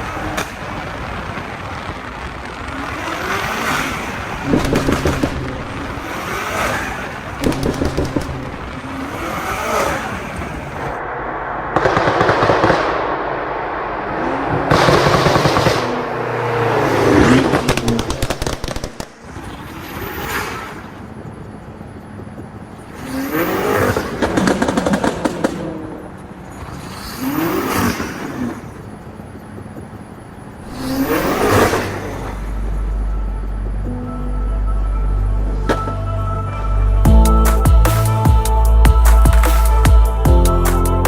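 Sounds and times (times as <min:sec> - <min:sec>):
exhaust pops and crackles: 0:00.0 - 0:11.0, 0:11.8 - 0:20.2, 0:21.4 - 0:32.9
car engine revving: 0:00.0 - 0:41.0.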